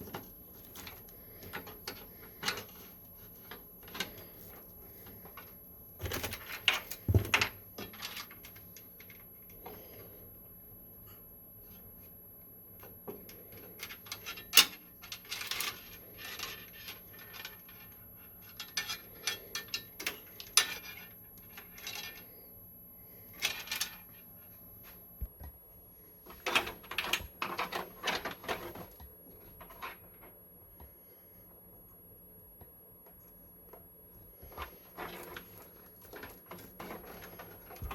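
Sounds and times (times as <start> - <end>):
small hard parts clicking and clattering: 13.2 - 22.3.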